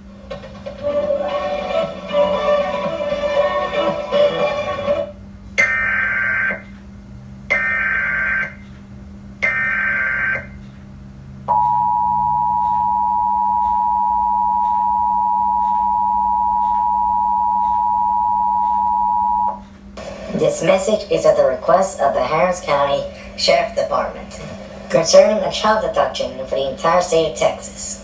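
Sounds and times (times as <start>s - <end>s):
two-tone attention signal: 11.5s - 19.6s.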